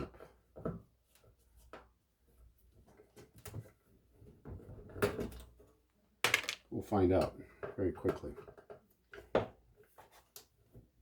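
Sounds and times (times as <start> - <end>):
clatter of parts: 6.3 - 6.7
clicks and knocks handling parts: 6.3 - 10.6.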